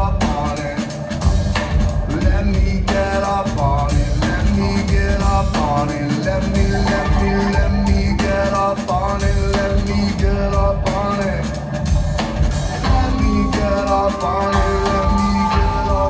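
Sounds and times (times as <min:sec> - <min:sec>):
drum kit beat: 0:00.0 - 0:16.0
live rock band playing: 0:00.0 - 0:16.0.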